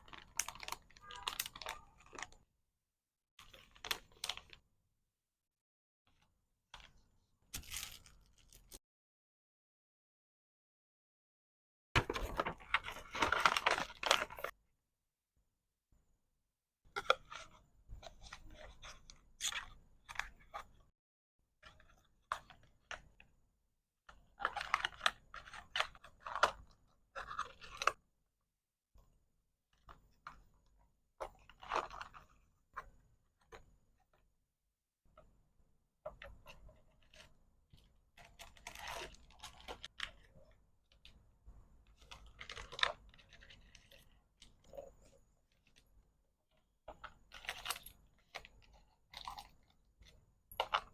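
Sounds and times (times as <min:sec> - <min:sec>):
plastic packaging crinkling: 0:00.0 - 0:02.4.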